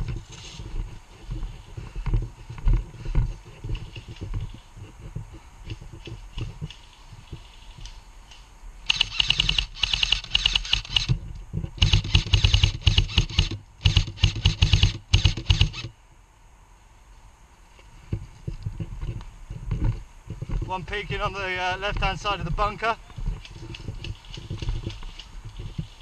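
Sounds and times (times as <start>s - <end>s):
airsoft rifle firing bursts: 8.9s - 11.2s, 11.8s - 15.9s.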